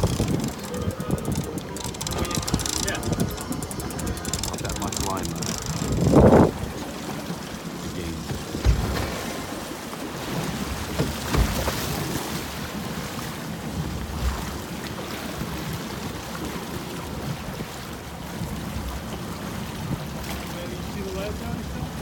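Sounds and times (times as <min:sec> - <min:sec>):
low thumps: 0:00.0 - 0:06.7
wind buffeting microphone: 0:00.0 - 0:09.7
water noise: 0:00.0 - 0:22.0.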